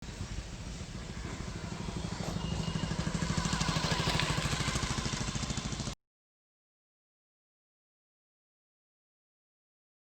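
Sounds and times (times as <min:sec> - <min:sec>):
engine running with fast pulse: 0:00.0 - 0:06.0.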